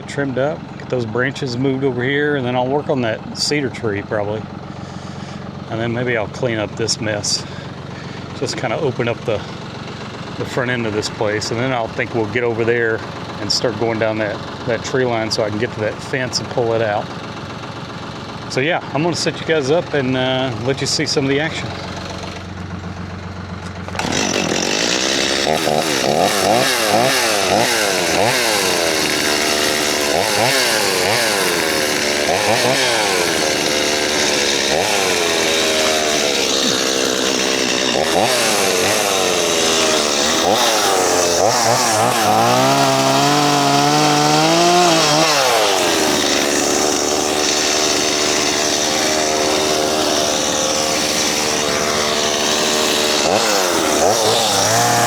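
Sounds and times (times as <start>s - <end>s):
chainsaw revving and cutting: 0.0s - 55.0s.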